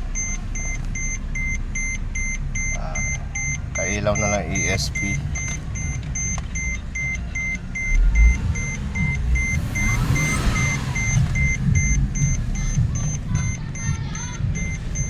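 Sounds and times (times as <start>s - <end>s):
car engine idling: 0.0s - 15.0s
high electronic warning beep: 0.1s - 15.0s.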